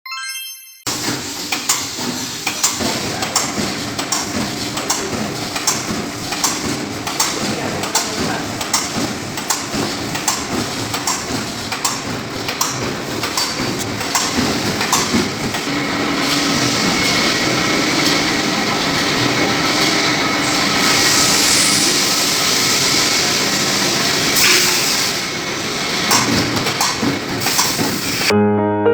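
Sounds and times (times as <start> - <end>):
machine hum: 0.9 - 28.3
cutting blade clacking: 1.5 - 15.7, 24.4 - 24.9, 26.0 - 28.3
short clicks and knocks: 26.1 - 28.3.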